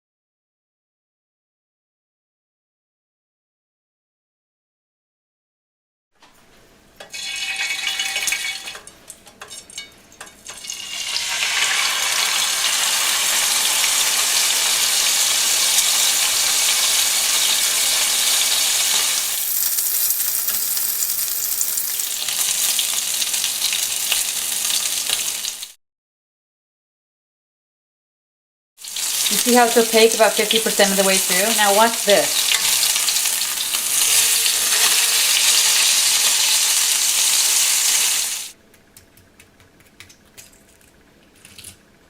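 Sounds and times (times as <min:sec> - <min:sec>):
meat sizzling in hot oil: 0:07.1 - 0:08.7, 0:10.4 - 0:25.8, 0:28.8 - 0:38.6.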